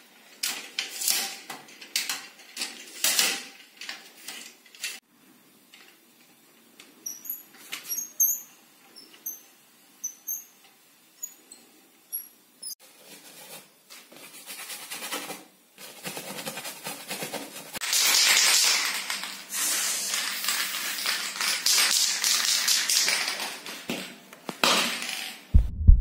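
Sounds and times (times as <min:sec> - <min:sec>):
dry scratching on a surface: 0:12.8 - 0:17.8.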